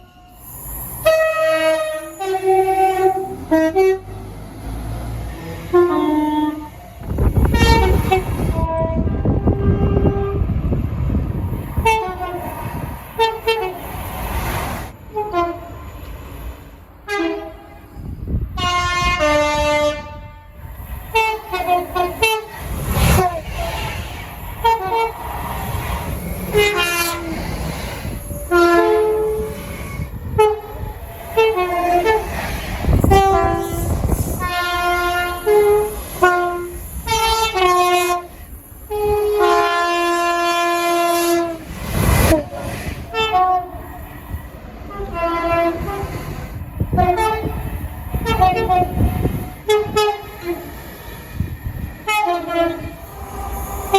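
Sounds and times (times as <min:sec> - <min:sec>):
rumble of passing trains: 0:00.0 - 0:53.9
locomotive horn blasts: 0:01.0 - 0:04.2, 0:05.3 - 0:10.6, 0:11.8 - 0:12.5, 0:13.2 - 0:13.8, 0:15.1 - 0:15.8, 0:17.0 - 0:18.0, 0:18.6 - 0:23.4, 0:24.6 - 0:25.2, 0:26.5 - 0:27.3, 0:28.4 - 0:32.3, 0:32.9 - 0:41.6, 0:43.1 - 0:43.8, 0:44.9 - 0:46.0, 0:46.9 - 0:47.6, 0:48.2 - 0:50.7, 0:52.0 - 0:53.9.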